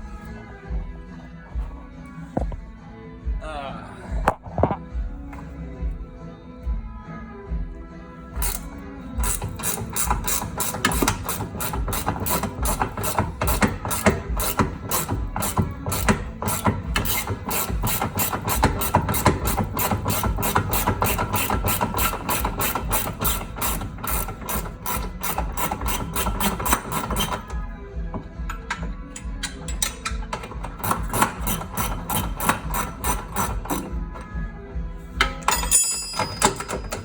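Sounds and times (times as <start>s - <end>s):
ratcheting wrench clicking: 8.4s - 27.6s, 28.5s - 34.3s, 35.2s - 37.0s.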